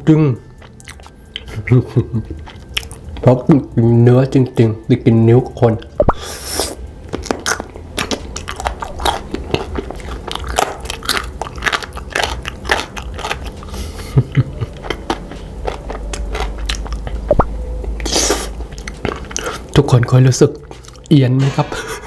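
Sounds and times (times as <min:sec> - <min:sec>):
crunchy biting and chewing: 0:00.5 - 0:03.3, 0:06.1 - 0:19.9.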